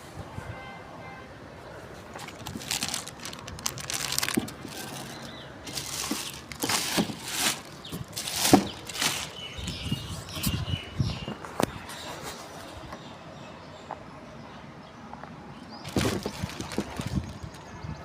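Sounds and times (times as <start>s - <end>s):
packaging rustling and crinkling: 2.1s - 10.5s, 15.8s - 17.7s.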